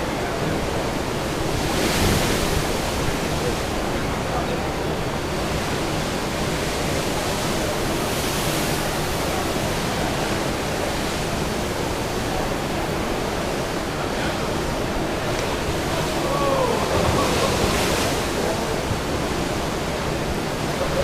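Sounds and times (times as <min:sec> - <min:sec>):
sea water rushing: 0:00.0 - 0:21.0
wind: 0:00.0 - 0:21.0.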